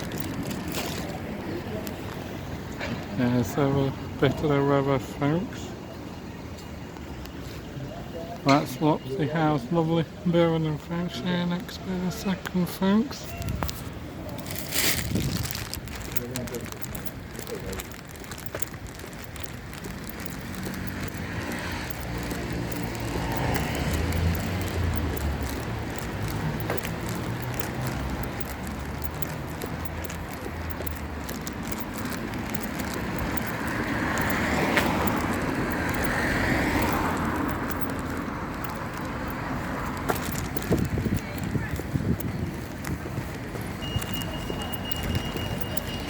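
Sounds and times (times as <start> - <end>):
vehicle engine humming: 13.5 - 46.0
vehicle passing: 18.4 - 46.0.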